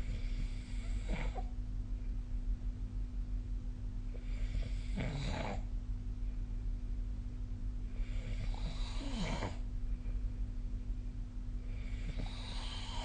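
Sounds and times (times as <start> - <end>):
steady low hum: 0.0 - 13.0
person snoring: 4.2 - 5.7, 8.0 - 9.6, 11.7 - 13.0.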